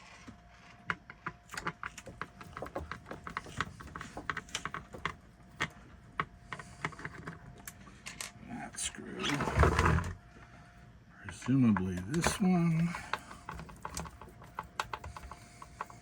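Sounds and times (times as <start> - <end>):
screwdriver clicks and taps: 13.1 - 16.0.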